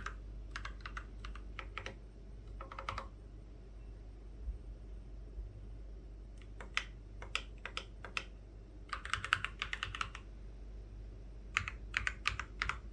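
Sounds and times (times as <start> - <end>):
mechanical keyboard typing: 0.0 - 3.1, 6.4 - 8.3, 8.9 - 10.2, 11.6 - 12.9.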